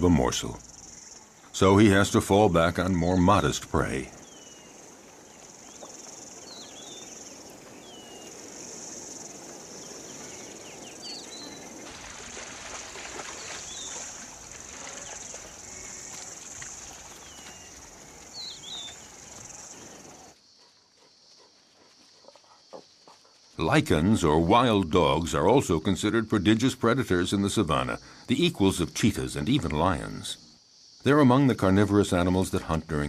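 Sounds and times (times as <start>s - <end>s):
high-pitched insect chorus: 0.0s - 33.0s
bird chirps: 4.1s - 11.9s, 14.9s - 20.3s.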